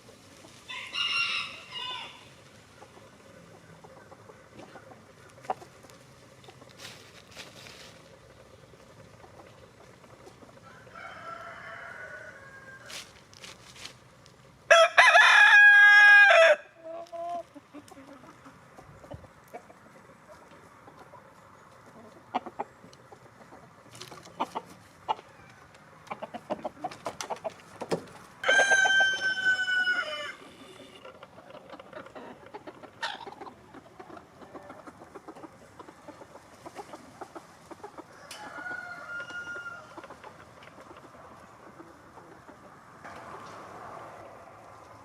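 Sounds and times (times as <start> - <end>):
chickens clucking: 0.0 - 14.7, 16.7 - 45.0
rooster crowing: 0.7 - 2.3, 10.6 - 13.0, 14.7 - 16.8, 28.4 - 30.4, 38.2 - 40.0.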